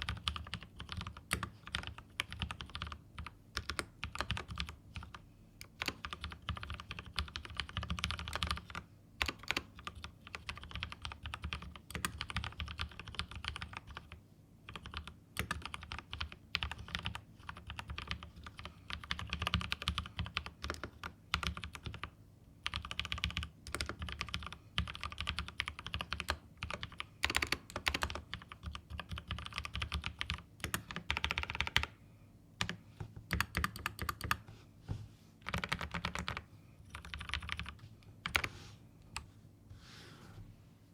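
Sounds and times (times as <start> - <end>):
mechanical keyboard typing: 0.0 - 31.9, 32.6 - 34.4, 35.4 - 38.5.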